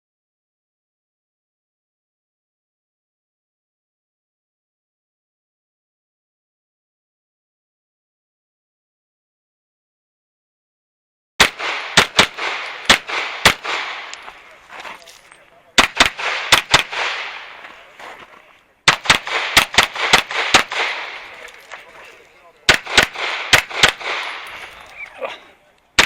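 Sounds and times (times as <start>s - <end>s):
handgun shots with echo: 11.4s - 15.1s, 15.8s - 17.9s, 18.9s - 25.1s.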